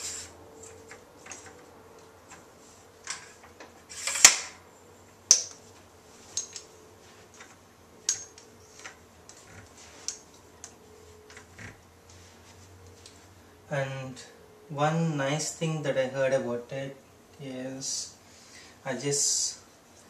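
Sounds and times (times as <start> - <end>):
tripod legs clicking and knocking: 5.3 - 5.6.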